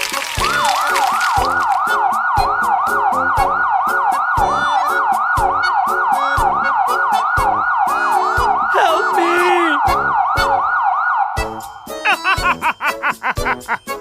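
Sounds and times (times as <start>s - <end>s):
yelping emergency siren: 1.4s - 11.6s
background music with drum beat: 11.9s - 14.0s.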